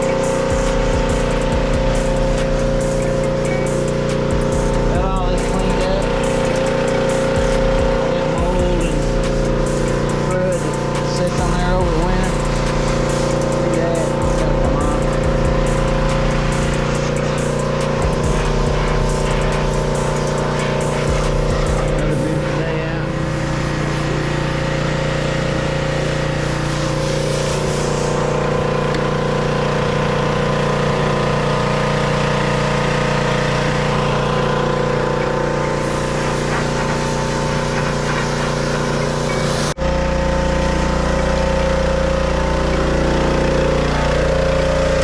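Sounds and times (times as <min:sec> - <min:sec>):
water spray hissing: 0:00.0 - 0:39.8
pressure washer motor drone: 0:00.0 - 0:45.0.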